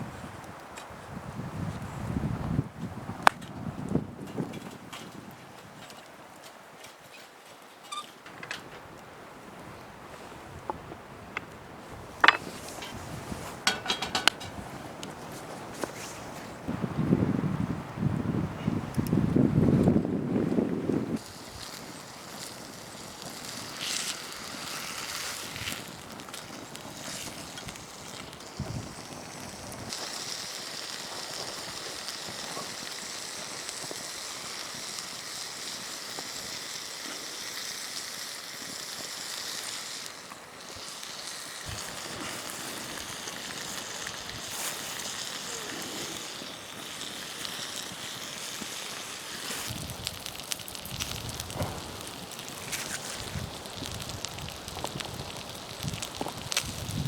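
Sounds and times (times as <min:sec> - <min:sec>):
campfire crackling and hissing: 0:00.0 - 0:57.0
sharp pops of fire: 0:02.9 - 0:09.7, 0:10.5 - 0:57.0
high hiss: 0:21.1 - 0:57.0.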